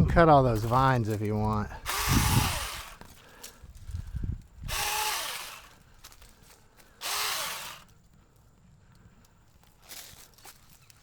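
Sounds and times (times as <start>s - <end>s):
electric chainsaw bursts: 1.8s - 3.1s, 4.6s - 5.8s, 7.0s - 7.9s.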